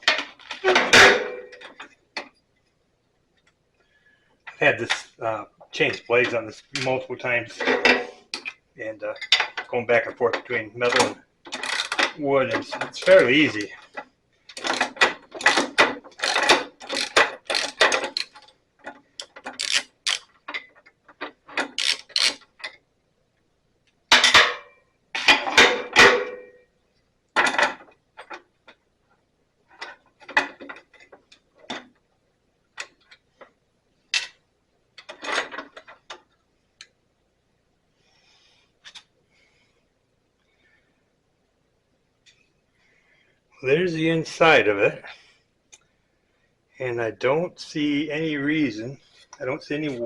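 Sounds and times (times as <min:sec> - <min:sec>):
ratchet wrench clicking: 0:16.2 - 0:18.3, 0:19.5 - 0:20.2, 0:21.8 - 0:22.4.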